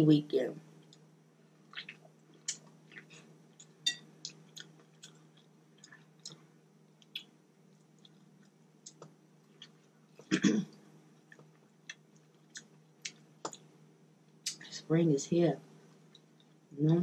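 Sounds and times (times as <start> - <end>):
faint steady hum: 0.0 - 17.0
close-up chewing: 7.0 - 9.9.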